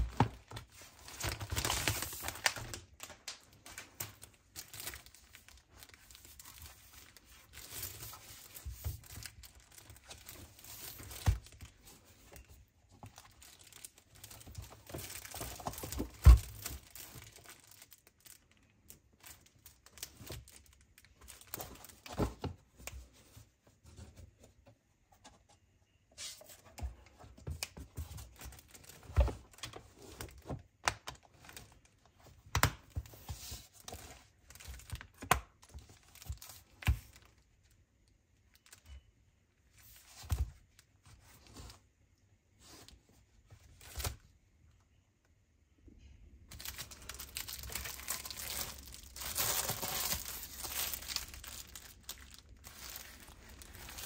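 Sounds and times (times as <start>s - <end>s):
packaging torn and crinkled: 9.0s - 11.6s, 13.2s - 22.0s, 46.5s - 54.0s.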